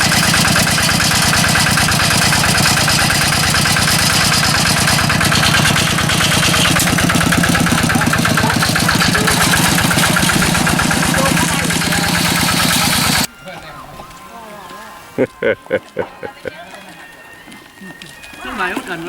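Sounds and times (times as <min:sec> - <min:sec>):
engine running steadily: 0:00.0 - 0:13.3.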